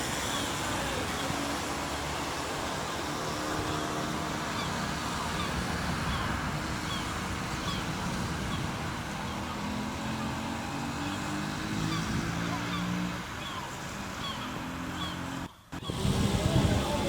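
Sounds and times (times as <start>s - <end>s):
heavy rain falling: 0.0s - 11.7s.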